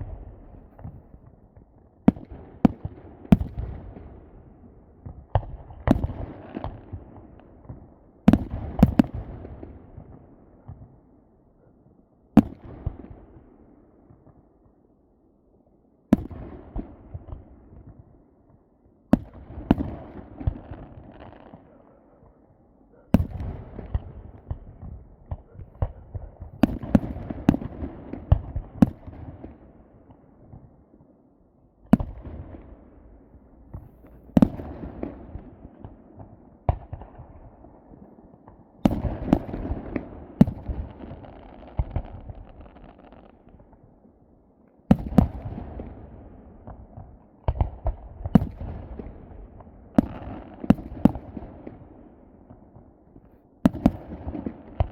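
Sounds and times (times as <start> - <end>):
fireworks rumble: 23.1 - 29.8, 31.9 - 43.9
fireworks bangs: 32.0 - 37.4.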